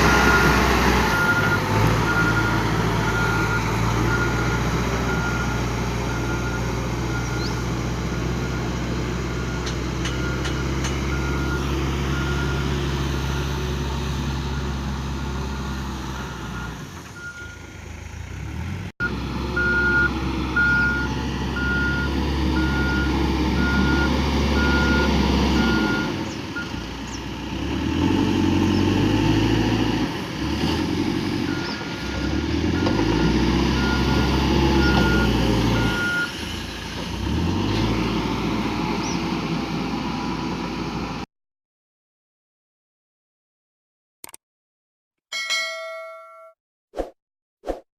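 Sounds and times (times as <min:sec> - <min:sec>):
diesel engine running under load: 0:00.0 - 0:41.2
reversing alarm beeping: 0:19.0 - 0:26.8, 0:32.8 - 0:36.3.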